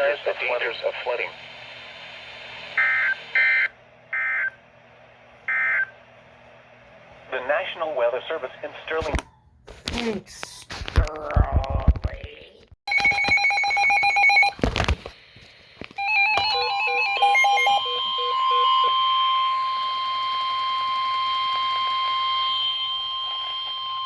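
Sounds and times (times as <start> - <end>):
steady single-tone warning alarm: 16.0 - 24.0.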